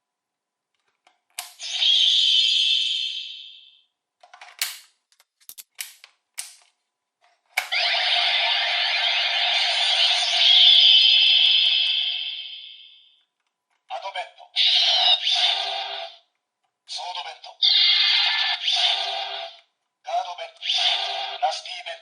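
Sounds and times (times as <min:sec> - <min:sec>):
toy electronic sound effect: 0:01.5 - 0:03.8, 0:07.6 - 0:13.1, 0:14.5 - 0:16.2, 0:17.5 - 0:19.6, 0:20.5 - 0:21.8.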